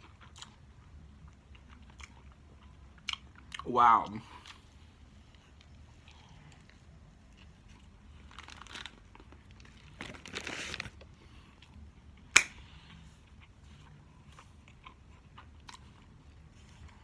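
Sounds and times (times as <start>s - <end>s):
food wrapper crinkling: 8.2s - 11.2s.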